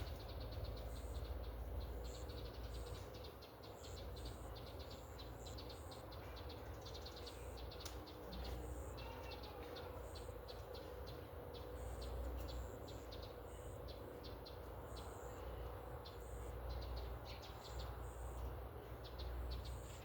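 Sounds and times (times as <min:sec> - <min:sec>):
small birds chirping: 0:00.0 - 0:20.0.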